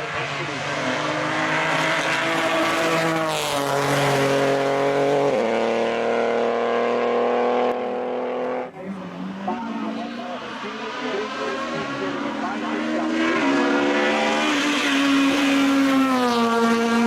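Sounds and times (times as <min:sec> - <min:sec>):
race car engine accelerating: 0:00.0 - 0:17.0.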